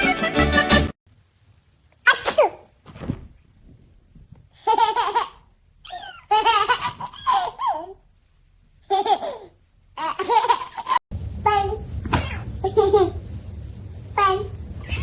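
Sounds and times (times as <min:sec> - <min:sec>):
background music: 0:00.0 - 0:01.0
person sneezing: 0:02.1 - 0:02.7
baby laughing: 0:04.6 - 0:08.0, 0:08.8 - 0:11.0.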